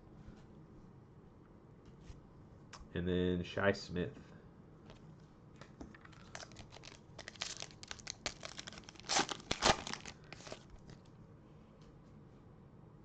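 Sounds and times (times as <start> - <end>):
foil wrapper tearing and crinkling: 5.9 - 11.1.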